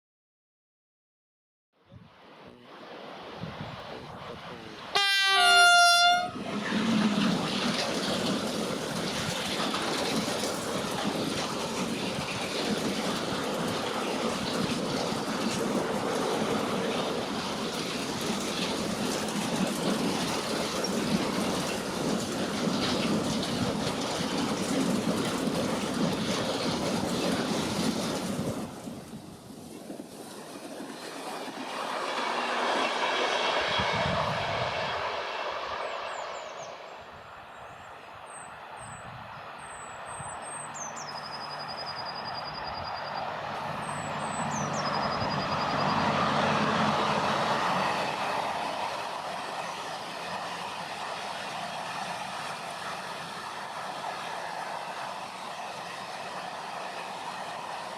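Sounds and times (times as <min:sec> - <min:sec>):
train wheels rolling on rail: 0:04.5 - 0:57.9
train horn: 0:04.9 - 0:06.5.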